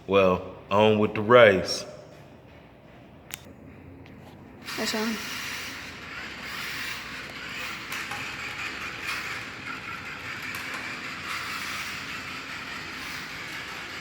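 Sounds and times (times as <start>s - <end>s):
toy rc cars whirring: 4.6s - 14.0s.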